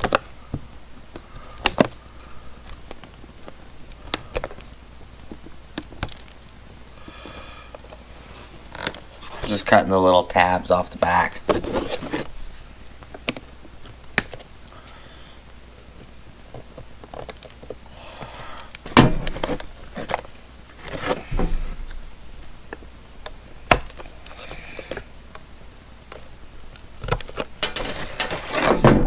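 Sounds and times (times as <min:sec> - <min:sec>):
package handling clicks and knocks: 0:00.0 - 0:02.0, 0:02.6 - 0:08.0, 0:16.0 - 0:29.0
packaging rustling: 0:01.4 - 0:06.8, 0:07.7 - 0:09.7, 0:10.8 - 0:14.5, 0:16.0 - 0:29.0.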